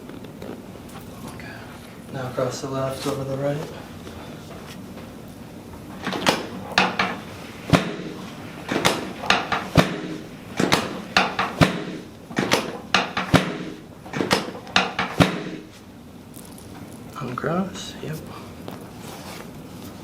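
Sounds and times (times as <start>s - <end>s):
sharp clacks and knocks: 6.0s - 15.8s.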